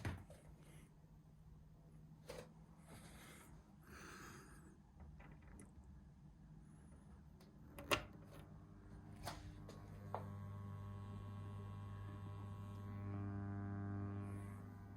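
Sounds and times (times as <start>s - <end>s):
buzzy electrical hum: 7.0s - 14.9s
cable plug clicking into jack: 7.8s - 8.4s.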